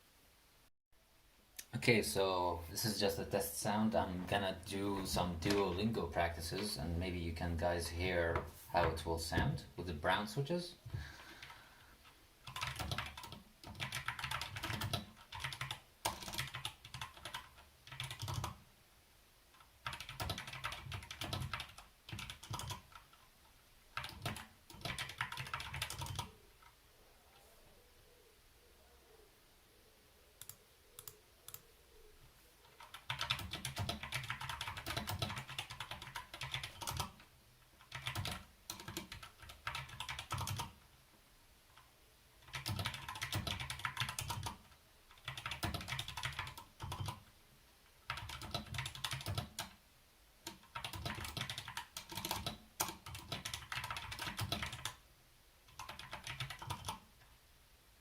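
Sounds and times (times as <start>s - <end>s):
mechanical keyboard typing: 12.4s - 18.6s, 19.6s - 23.3s, 24.0s - 26.3s, 32.8s - 40.8s, 42.4s - 47.3s, 48.0s - 49.8s, 50.4s - 55.0s, 55.7s - 57.0s.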